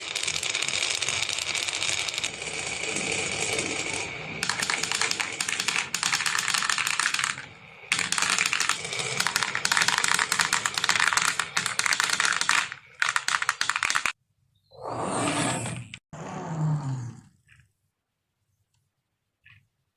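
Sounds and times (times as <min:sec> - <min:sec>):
marbles clattering down a run: 0:00.0 - 0:14.2.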